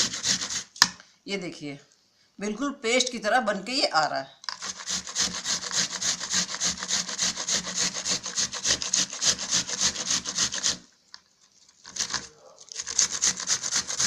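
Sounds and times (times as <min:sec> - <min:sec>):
onion rasping on grater: 0:00.0 - 0:00.8, 0:04.6 - 0:10.9, 0:11.8 - 0:14.0.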